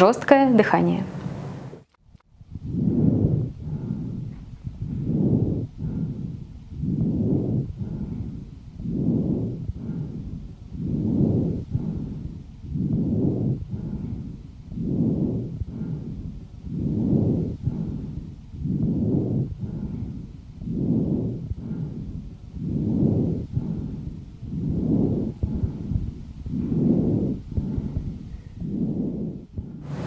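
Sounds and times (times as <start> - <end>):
harsh breathing through stethoscope: 2.6 - 30.0.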